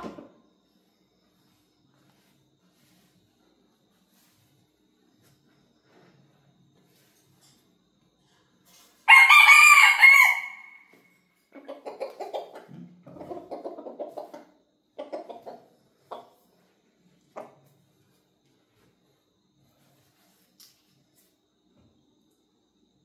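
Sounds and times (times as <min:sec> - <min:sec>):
rooster crowing: 0:09.1 - 0:11.0
chicken clucking: 0:11.4 - 0:16.6, 0:17.3 - 0:17.7.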